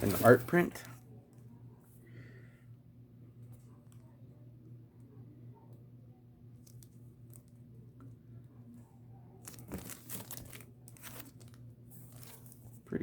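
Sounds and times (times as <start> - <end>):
low steady hum: 0.0 - 13.0
packaging crinkling and tearing: 9.4 - 12.7.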